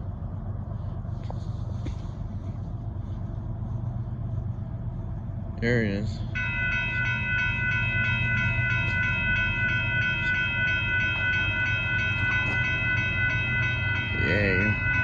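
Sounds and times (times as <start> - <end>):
passing train rumble: 0.0 - 15.0
locomotive air horn chord: 6.4 - 15.0.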